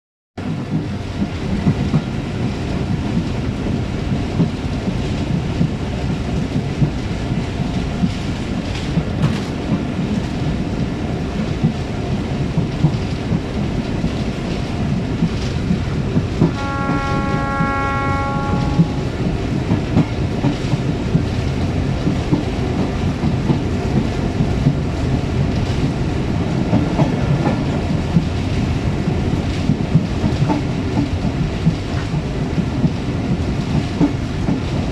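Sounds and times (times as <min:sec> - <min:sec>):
train rumble: 0:00.4 - 0:34.9
train horn: 0:16.4 - 0:19.2.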